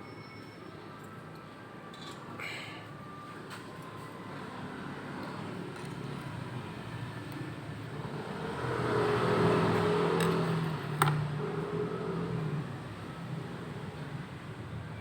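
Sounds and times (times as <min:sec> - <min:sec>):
vehicle engine passing by: 0:06.7 - 0:14.4.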